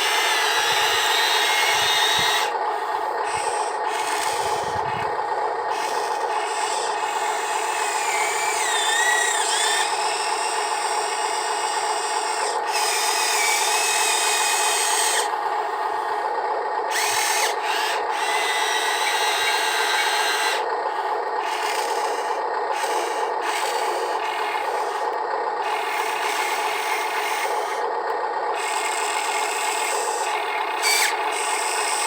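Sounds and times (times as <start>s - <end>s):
small electric motor whine: 0.0s - 32.0s
toy machine scraping sand: 3.2s - 5.1s, 5.8s - 11.1s, 21.4s - 25.0s, 28.6s - 32.0s.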